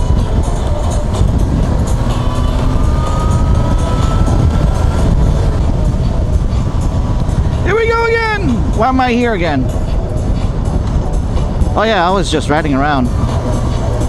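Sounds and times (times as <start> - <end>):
faint whine: 0.0 - 9.1
motorcycle engine: 0.0 - 14.0
wind rush on microphone: 0.0 - 14.0.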